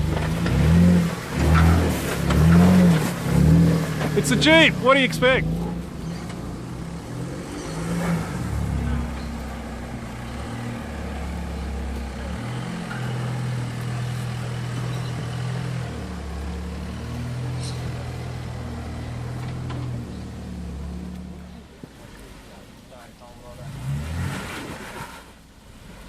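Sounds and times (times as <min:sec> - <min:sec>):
car engine running at low revs: 0:00.0 - 0:26.0.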